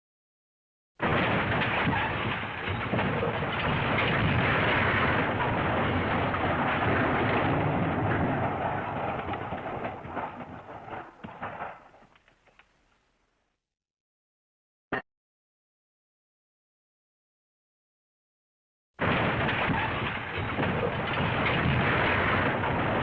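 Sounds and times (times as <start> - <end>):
crashing rumble: 1.0 - 13.3, 19.0 - 23.0
scattered crackles: 1.0 - 13.5, 19.0 - 23.0.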